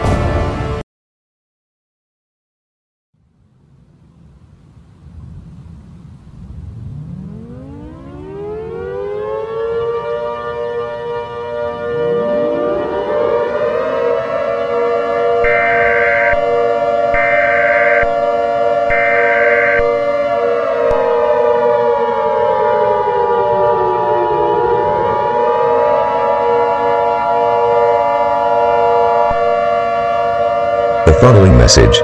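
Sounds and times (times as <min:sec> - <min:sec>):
civil defense siren: 0:05.1 - 0:32.0
two-tone attention signal: 0:12.0 - 0:14.2, 0:15.4 - 0:16.6, 0:18.9 - 0:19.9.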